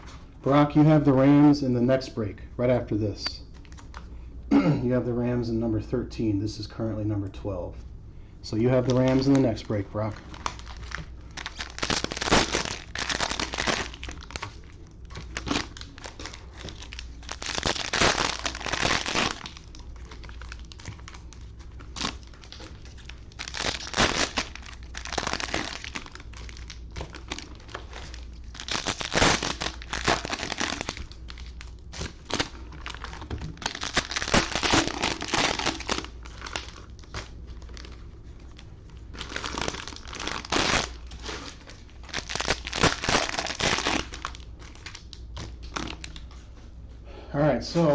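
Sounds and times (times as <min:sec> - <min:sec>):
cellophane wrappers crinkling and tearing: 0:08.5 - 0:46.4.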